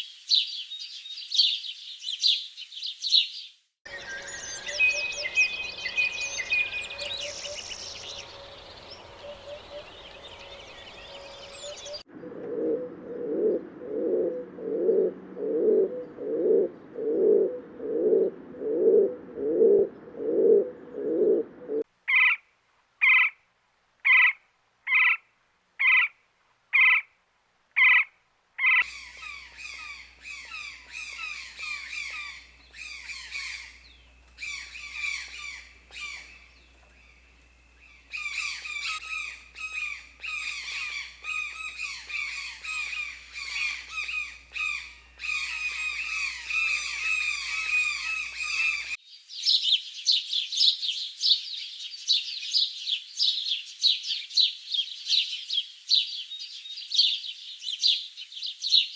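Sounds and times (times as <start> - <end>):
high bird chirps: 3.0 - 12.1
faint low hum: 3.9 - 21.8
low bird calls: 3.9 - 21.8, 28.8 - 49.0.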